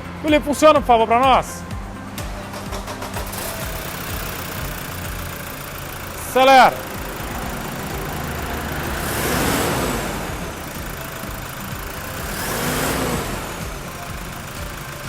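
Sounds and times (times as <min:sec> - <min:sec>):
diesel engine revving: 0:00.0 - 0:15.0
turbocharger hiss and whistle: 0:03.0 - 0:15.0.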